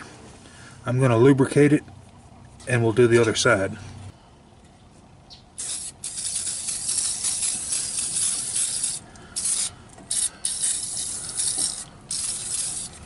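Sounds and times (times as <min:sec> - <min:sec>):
aerosol can spraying: 0:05.6 - 0:13.0.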